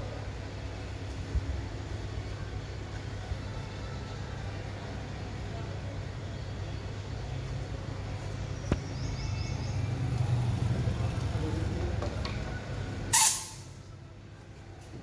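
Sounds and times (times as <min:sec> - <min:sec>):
low mechanical hum: 0:00.0 - 0:15.0
loud hiss of air: 0:13.1 - 0:13.7.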